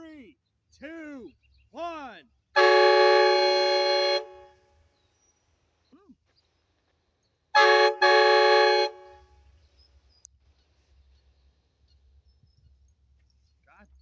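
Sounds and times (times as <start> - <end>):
train horn blasts: 2.6 - 4.6, 7.6 - 9.3.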